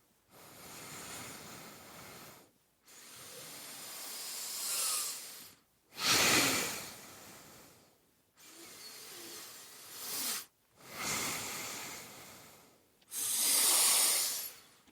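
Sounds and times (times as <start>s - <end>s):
slow heavy breathing: 6.7s - 14.9s.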